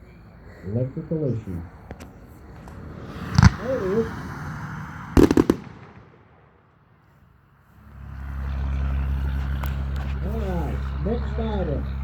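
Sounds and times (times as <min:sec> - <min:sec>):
steady low hum: 0:00.0 - 0:12.0
firework shells bursting: 0:03.2 - 0:03.9, 0:05.2 - 0:06.5.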